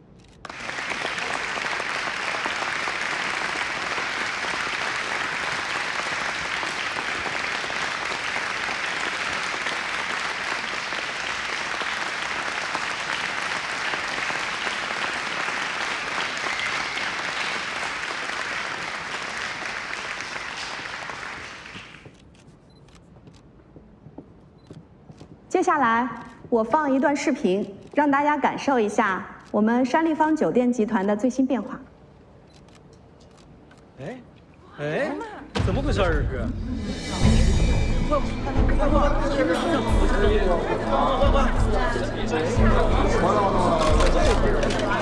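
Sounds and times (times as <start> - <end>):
large audience applauding: 0.3 - 22.2, 39.6 - 45.0.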